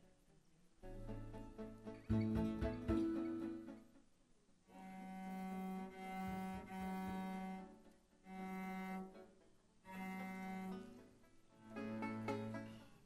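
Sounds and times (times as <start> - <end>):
low bowed string note: 4.7 - 9.3, 9.9 - 11.1.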